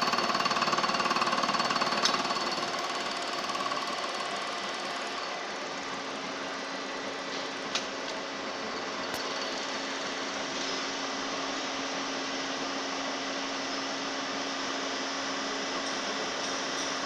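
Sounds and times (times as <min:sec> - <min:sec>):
milling machine running: 0:00.0 - 0:07.3.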